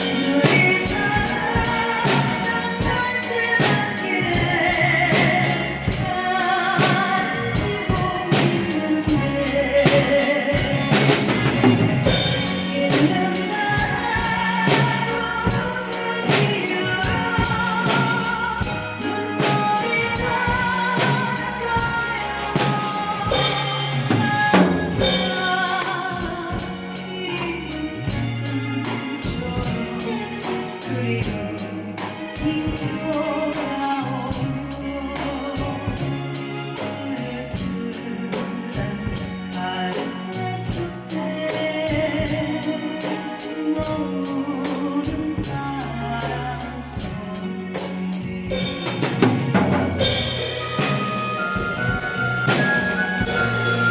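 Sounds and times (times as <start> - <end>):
drum kit playing: 0.0 - 53.9
woman singing: 0.0 - 53.9
cymbal strokes: 50.0 - 53.9.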